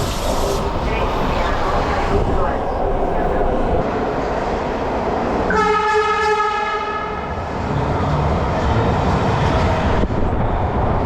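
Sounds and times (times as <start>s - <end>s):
train running noise: 0.0s - 11.0s
train horn: 5.5s - 7.4s.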